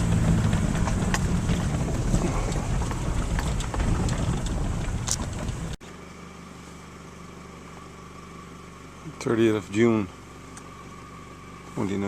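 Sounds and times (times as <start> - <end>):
small rattles and clicks: 0.0 - 5.8
vehicle engine rumbling: 0.0 - 12.0.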